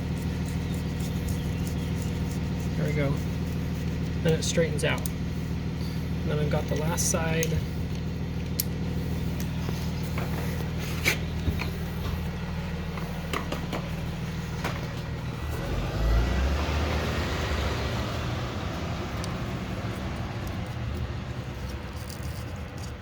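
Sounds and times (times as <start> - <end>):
low engine hum: 0.0 - 23.0
vehicle rushing past: 14.0 - 22.6.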